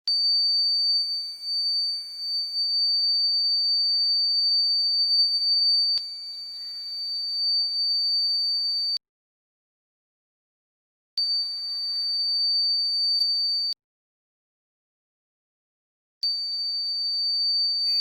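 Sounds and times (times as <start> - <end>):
high-pitched piezo buzzer tone: 0.1 - 9.0, 16.2 - 18.0.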